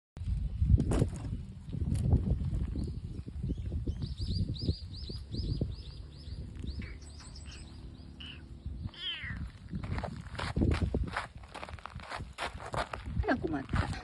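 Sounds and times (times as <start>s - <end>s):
kitten mewing: 8.2s - 9.4s.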